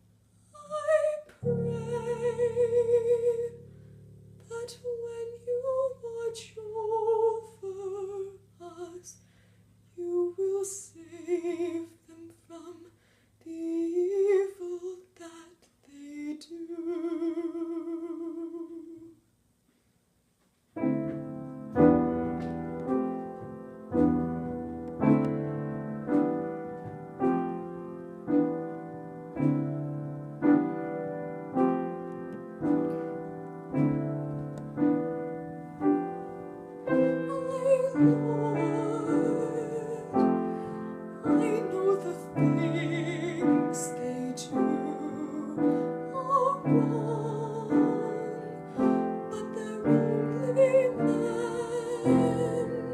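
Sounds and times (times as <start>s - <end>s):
person singing with vibrato: 0.5s - 3.8s, 4.4s - 9.3s, 10.0s - 19.2s, 36.9s - 52.9s
piano chords: 0.6s - 8.9s, 20.8s - 52.9s.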